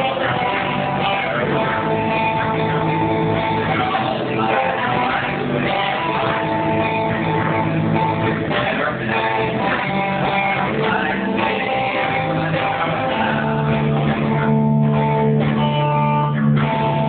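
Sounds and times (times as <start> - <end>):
guitar strumming chords: 0.0 - 17.0
person singing: 0.0 - 17.0.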